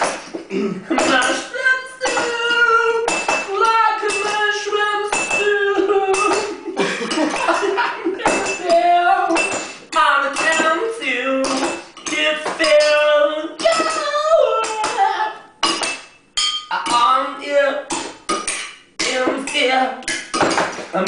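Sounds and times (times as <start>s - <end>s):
dishes and cutlery percussion: 0.0s - 2.4s, 3.0s - 17.2s, 17.9s - 21.0s
person vocalising wordlessly: 1.0s - 7.0s, 7.6s - 15.5s, 16.7s - 17.9s.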